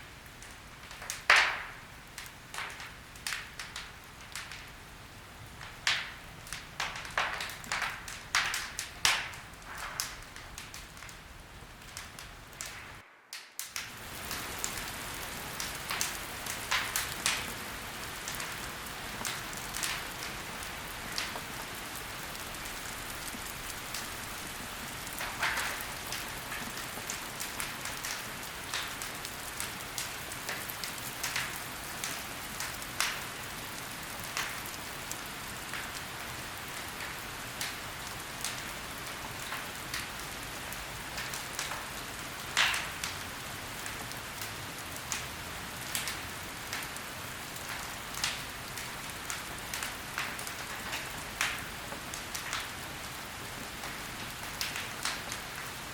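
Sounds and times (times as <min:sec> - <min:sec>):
wood fire crackling: 0:00.0 - 0:55.9.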